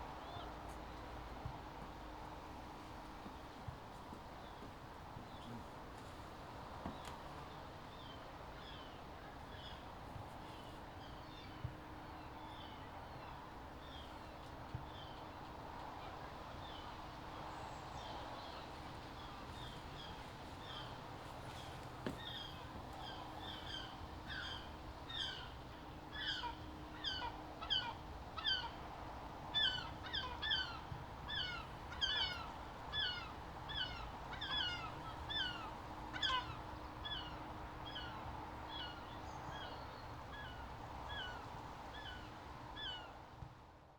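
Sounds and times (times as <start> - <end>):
seagulls calling: 29.6 - 37.3.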